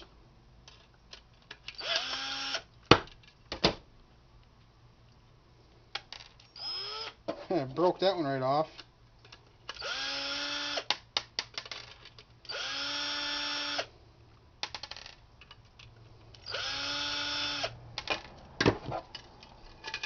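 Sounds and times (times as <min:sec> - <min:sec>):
power drill whine: 0:01.8 - 0:02.7, 0:06.6 - 0:07.2, 0:09.8 - 0:10.9, 0:12.5 - 0:13.9, 0:16.4 - 0:17.7.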